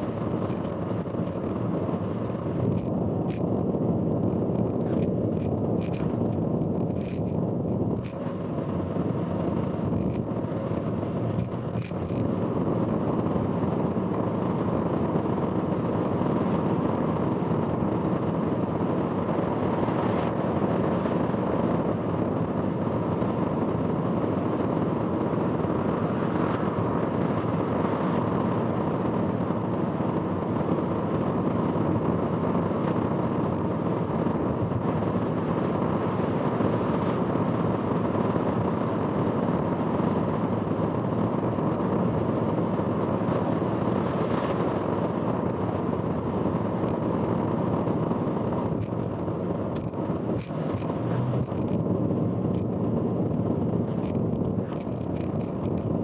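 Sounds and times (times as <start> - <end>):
car road noise: 0.0 - 14.3, 44.6 - 56.0
sharp clicks: 48.8 - 51.8, 54.0 - 56.0.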